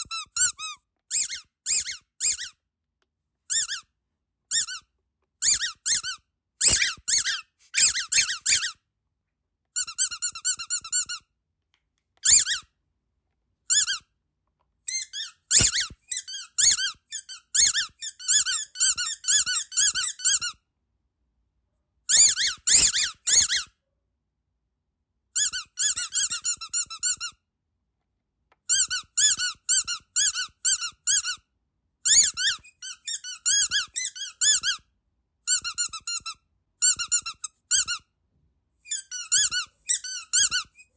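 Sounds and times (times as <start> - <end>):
squeaky dog toy squeaking: 0.0 - 2.6, 3.5 - 3.9, 4.5 - 8.8, 9.8 - 11.3, 12.2 - 12.7, 13.7 - 14.1, 14.9 - 20.6, 22.1 - 23.8, 25.4 - 27.4, 28.7 - 31.4, 32.0 - 34.9, 35.5 - 38.1, 38.8 - 40.9.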